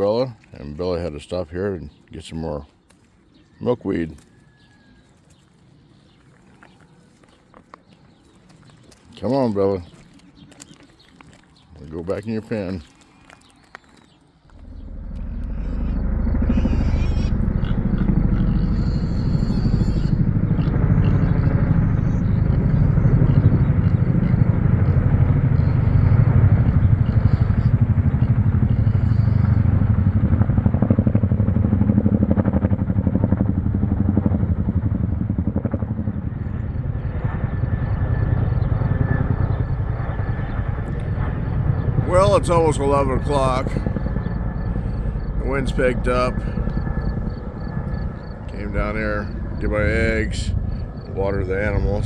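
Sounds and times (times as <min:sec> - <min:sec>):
helicopter rotor throbbing: 0:14.4 - 0:52.0.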